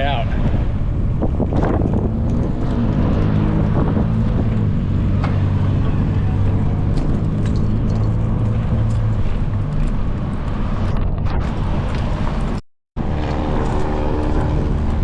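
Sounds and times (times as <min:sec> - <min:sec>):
road traffic: 0:00.0 - 0:15.0
wind rushing over microphone: 0:00.0 - 0:15.0
low engine hum: 0:00.2 - 0:15.0.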